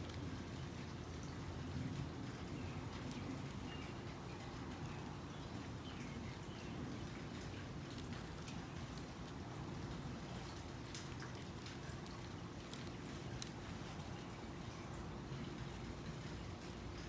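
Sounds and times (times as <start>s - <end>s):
soft ticks: 2.0s - 6.2s, 7.0s - 14.3s.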